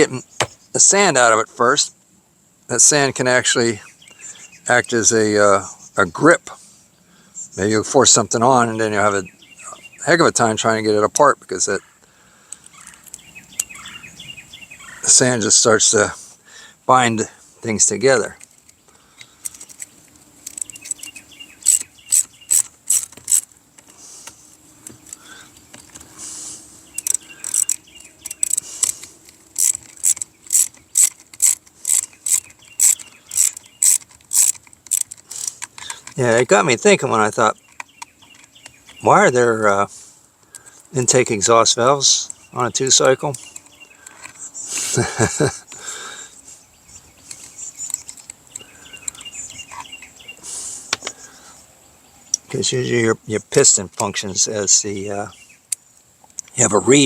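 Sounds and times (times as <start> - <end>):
birds chirping: 0.0 - 57.0
sharp click: 0.4 - 0.6
ratchet wrench clicking: 19.4 - 23.5, 27.0 - 36.2.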